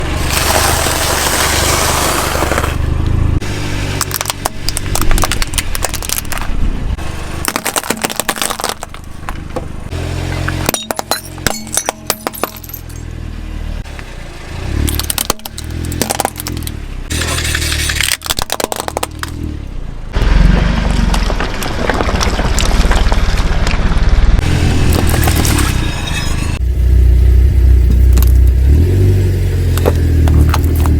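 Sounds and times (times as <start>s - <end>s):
tyres crushing brittle objects: 0.0s - 2.8s, 3.9s - 6.6s, 7.2s - 9.7s, 14.8s - 19.4s, 24.8s - 25.7s, 29.7s - 30.9s
car engine rumble: 0.0s - 30.9s.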